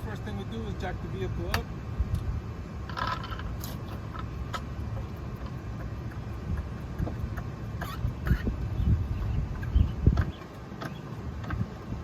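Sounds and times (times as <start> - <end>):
steady low rumble: 0.0 - 12.0
car jack scraping and clicking: 2.8 - 5.6.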